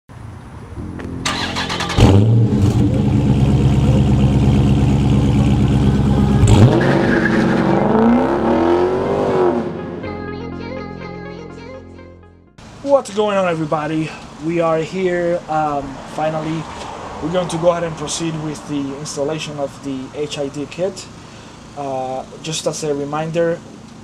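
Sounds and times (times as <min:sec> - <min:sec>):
car engine starting and idling: 0:01.1 - 0:09.9
car engine revving: 0:01.2 - 0:09.8.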